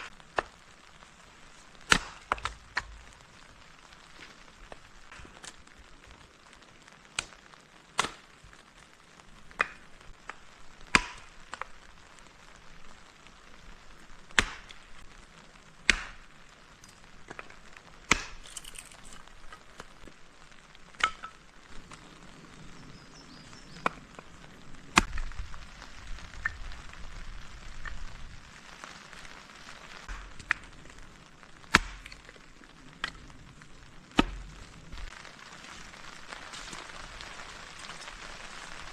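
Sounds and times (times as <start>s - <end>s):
wood chopping strikes: 1.9s - 3.0s, 8.0s - 8.2s, 10.9s - 11.3s, 14.4s - 14.8s, 15.9s - 16.2s, 18.1s - 19.2s, 31.7s - 32.2s, 34.2s - 34.5s.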